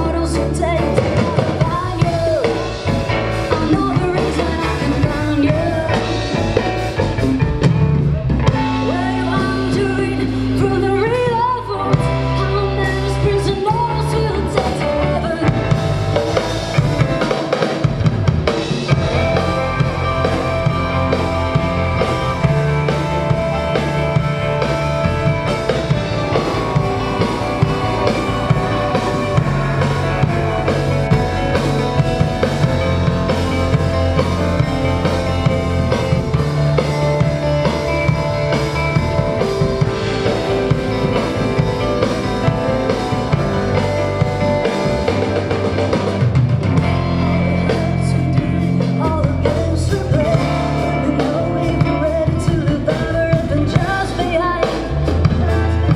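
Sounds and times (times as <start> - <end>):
person singing: 0.0 - 16.4, 46.8 - 55.9
rock band playing live: 0.0 - 55.9.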